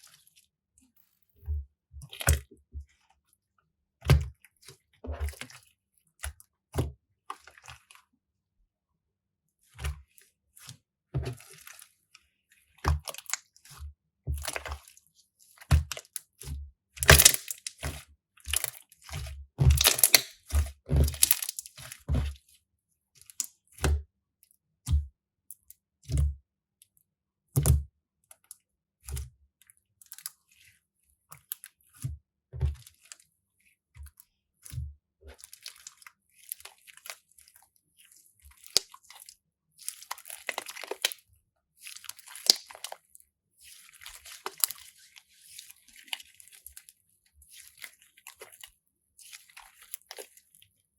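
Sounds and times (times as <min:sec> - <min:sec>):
crunchy slime crackling and popping: 0:17.0 - 0:17.8, 0:19.6 - 0:21.8.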